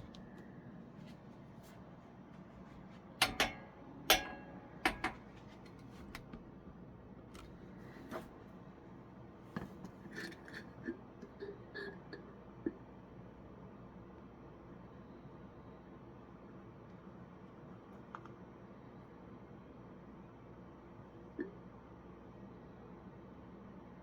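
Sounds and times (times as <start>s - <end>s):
objects knocking and clinking: 3.2s - 5.3s.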